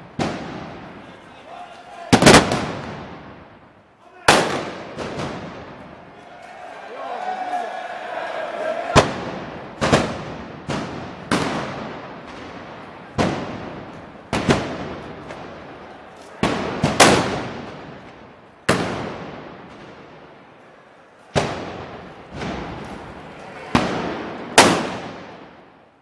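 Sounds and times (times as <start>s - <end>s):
loud sharp bangs echoing: 0.0s - 1.2s, 2.1s - 3.7s, 4.3s - 6.2s, 8.4s - 20.3s, 23.7s - 25.7s.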